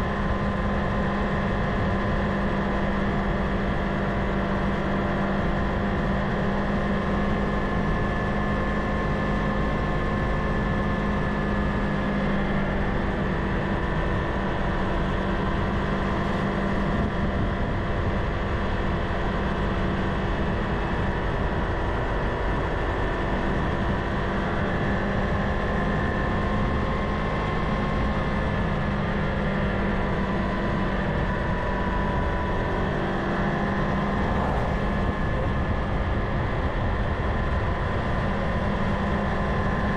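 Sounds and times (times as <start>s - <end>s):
motorcycle engine cruising: 0.0s - 39.9s
riding wind rush: 9.6s - 39.9s.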